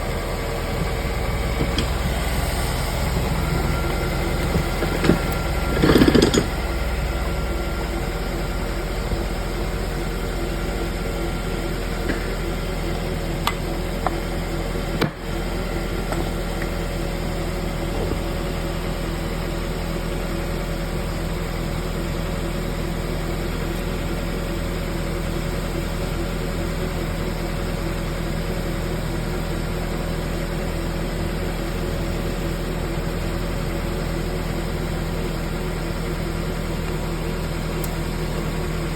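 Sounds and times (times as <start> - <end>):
wheel bearing humming: 0.0 - 19.5.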